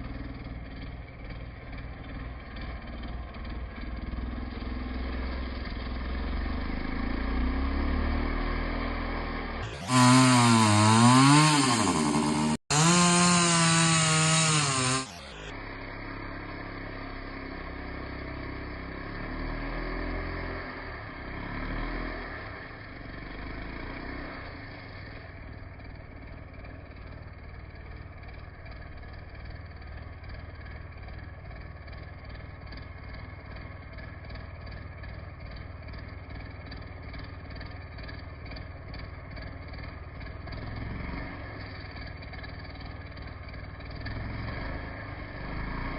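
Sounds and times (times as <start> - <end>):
engine running steadily: 0.0 - 12.9, 14.5 - 45.9
engine revving: 0.0 - 26.2, 38.5 - 45.9.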